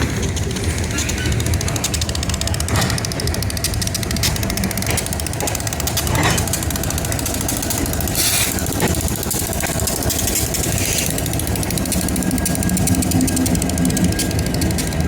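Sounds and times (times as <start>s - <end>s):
diesel locomotive engine hum: 0.0s - 15.0s
locomotive hiss: 8.1s - 8.8s.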